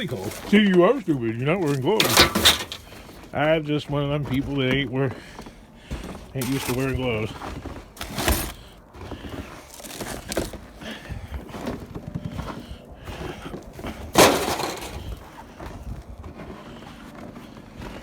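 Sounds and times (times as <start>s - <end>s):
aluminum scrap clattering: 1.9s - 3.0s, 14.2s - 15.2s.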